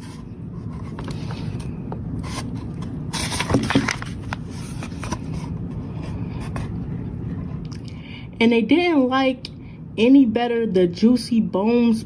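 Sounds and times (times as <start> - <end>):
low background hum: 0.0 - 12.0
paper page turning: 2.2 - 5.5.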